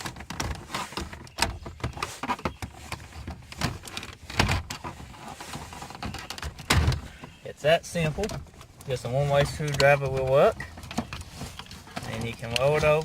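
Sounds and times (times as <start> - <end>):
plastic clicks and knocks: 0.0 - 13.0.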